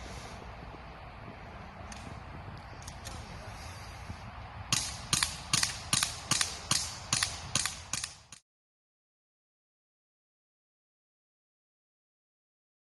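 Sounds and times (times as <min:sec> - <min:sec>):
airsoft gun shots: 0:04.7 - 0:08.4.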